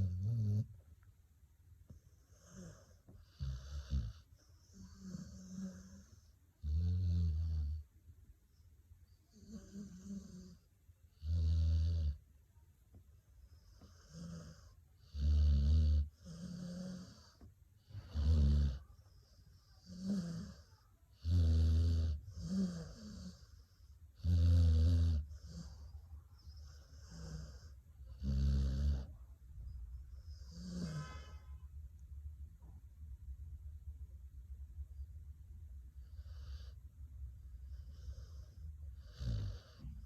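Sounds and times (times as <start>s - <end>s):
dog snoring: 0.0s - 0.7s, 1.9s - 7.8s, 9.3s - 12.2s, 13.6s - 18.9s, 19.6s - 29.1s, 30.3s - 31.4s, 36.0s - 36.8s, 37.7s - 40.0s.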